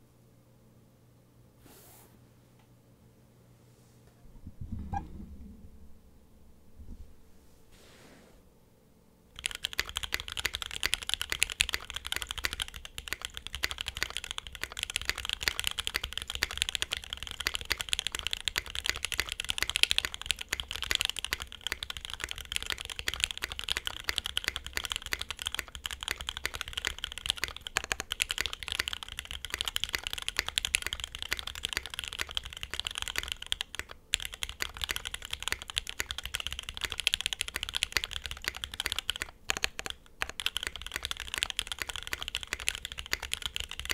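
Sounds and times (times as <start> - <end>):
mechanical keyboard typing: 9.4 - 43.9.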